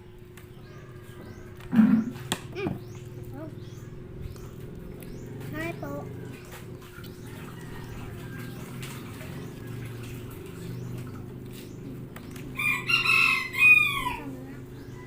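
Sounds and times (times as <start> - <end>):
steady low hum: 0.0 - 15.0
rooster crowing: 7.2 - 8.6, 12.6 - 14.4.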